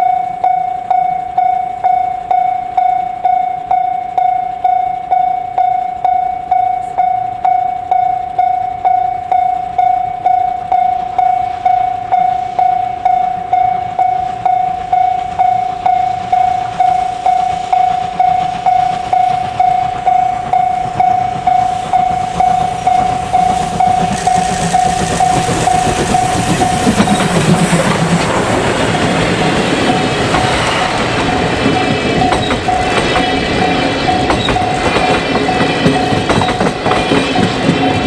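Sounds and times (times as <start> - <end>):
level-crossing warning bell: 0.0 - 38.0
steam train approaching: 0.0 - 38.0.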